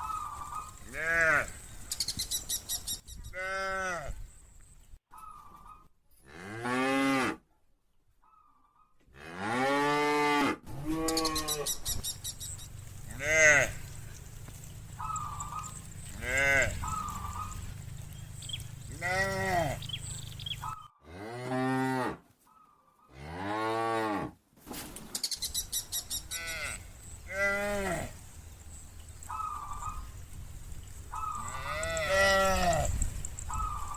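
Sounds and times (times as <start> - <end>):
cows mooing: 0.3 - 1.7, 12.7 - 22.2, 26.3 - 28.3, 31.2 - 33.9.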